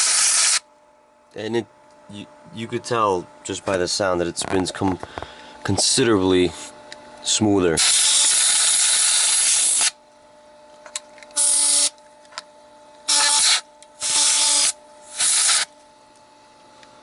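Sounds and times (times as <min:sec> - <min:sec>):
compressed air blasts hissing: 0:00.0 - 0:00.6, 0:13.1 - 0:15.7
pump humming faintly: 0:00.0 - 0:17.0.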